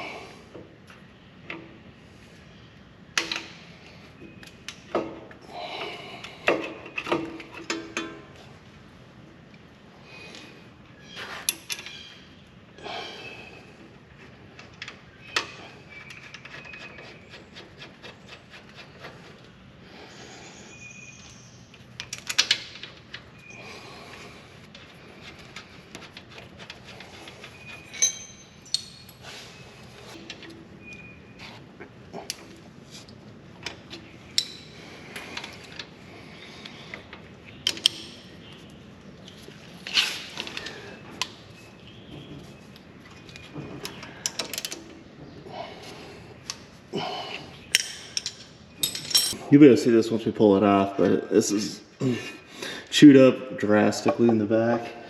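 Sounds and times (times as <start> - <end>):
metal tools clanking: 25.5 - 29.2, 47.7 - 49.5.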